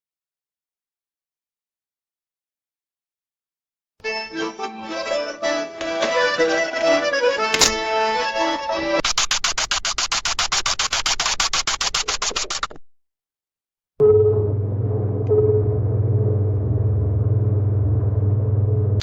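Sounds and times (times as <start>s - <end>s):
sharp click: 7.5s - 8.0s.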